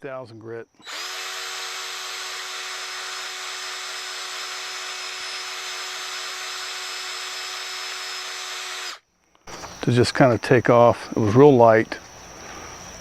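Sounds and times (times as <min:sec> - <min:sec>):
cordless drill sanding whine: 0:00.8 - 0:09.9.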